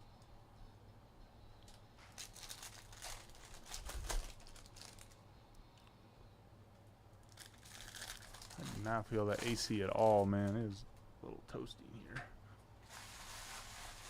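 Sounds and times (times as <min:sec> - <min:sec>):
low steady hum: 0:00.0 - 0:14.0
foil wrappers crinkling and tearing: 0:01.7 - 0:05.2, 0:07.2 - 0:10.6, 0:12.8 - 0:14.0.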